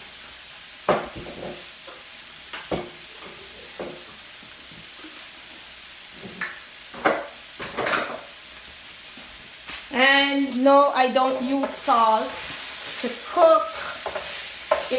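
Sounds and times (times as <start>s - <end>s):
low sizzle: 0.0s - 14.9s
spoon knocking and scraping pot: 6.2s - 8.3s, 14.0s - 14.9s.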